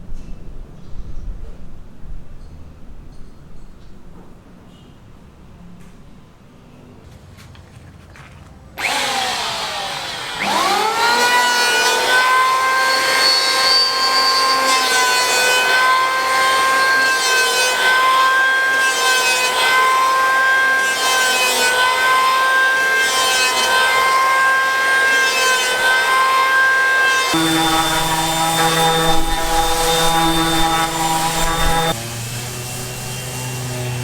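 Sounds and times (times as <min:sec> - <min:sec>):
power tool motor whine cutting: 0:08.8 - 0:34.0.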